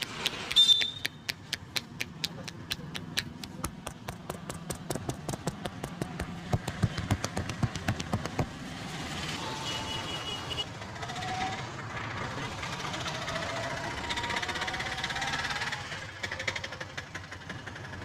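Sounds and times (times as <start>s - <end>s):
rhythmic hand slaps: 0.0s - 8.5s
street noise: 0.0s - 18.0s.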